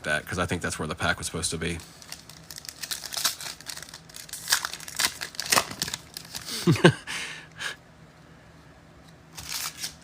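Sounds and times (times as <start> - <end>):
foil wrapper crinkling and tearing: 1.6 - 6.7, 9.3 - 10.0.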